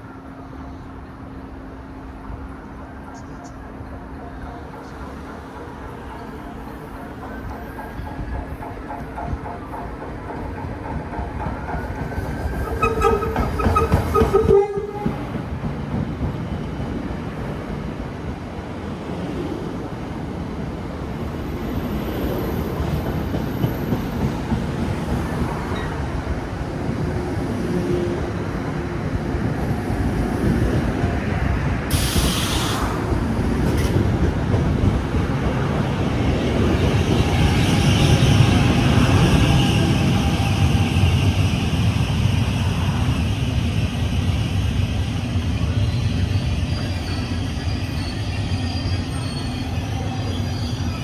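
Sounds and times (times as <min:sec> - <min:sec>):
train wheels rumbling on rails: 0:01.5 - 0:51.0
brief hiss: 0:31.9 - 0:33.0.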